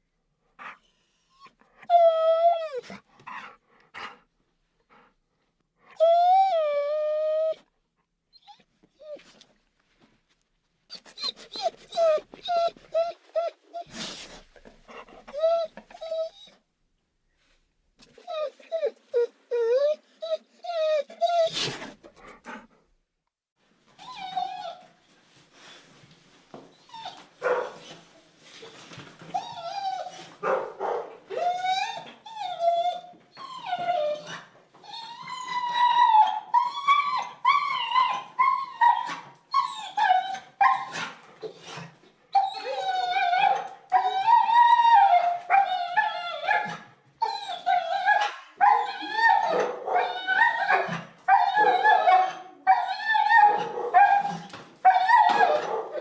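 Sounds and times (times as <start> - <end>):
dog whining: 0.6 - 3.5, 10.9 - 16.6, 18.2 - 22.7, 29.3 - 56.0.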